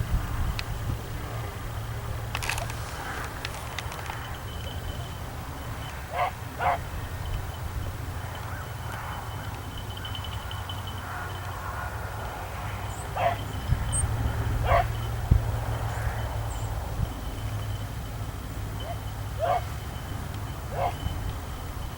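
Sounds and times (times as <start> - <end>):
low steady rumble: 0.0 - 21.9
dogs barking: 5.7 - 7.0, 12.8 - 15.1, 18.8 - 19.8, 20.7 - 21.1.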